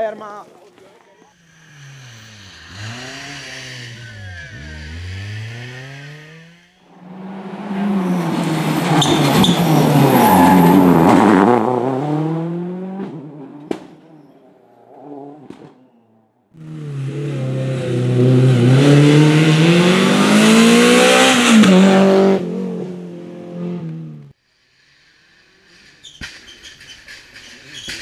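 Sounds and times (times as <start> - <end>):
rally car engine revving: 1.4 - 24.4
sharp crack: 13.6 - 14.1.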